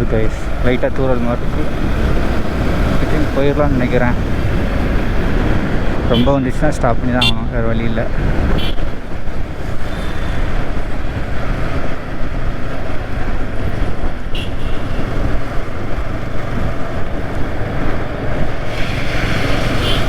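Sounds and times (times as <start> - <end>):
wind rushing over camera: 8.0 - 20.0.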